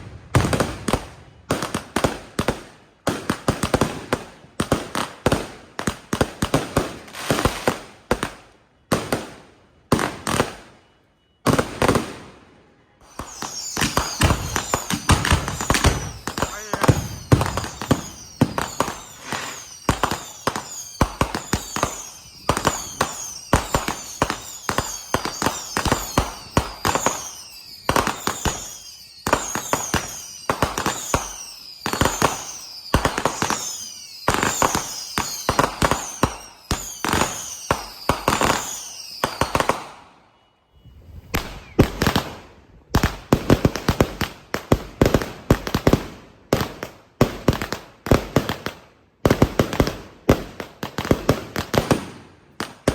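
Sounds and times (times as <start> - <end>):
fireworks bangs and crackles: 0.0 - 52.9
falling firework whistles: 5.8 - 44.2.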